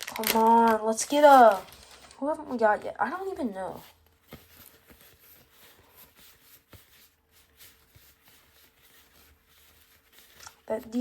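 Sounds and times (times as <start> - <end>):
cards clicking and rustling: 0.0 - 2.2, 4.1 - 7.0, 9.7 - 10.7.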